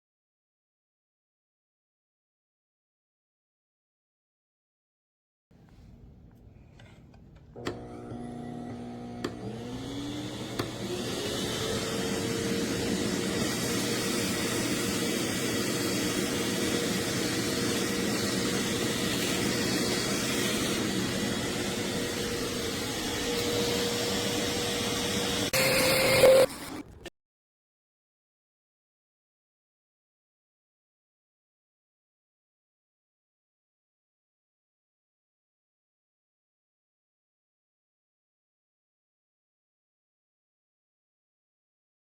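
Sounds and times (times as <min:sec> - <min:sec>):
vacuum motor whining: 0:07.6 - 0:27.0.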